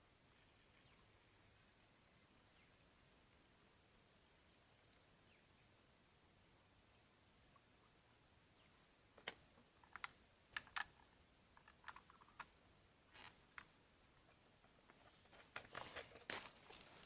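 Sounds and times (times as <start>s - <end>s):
faint clicks and light taps: 8.7s - 12.6s.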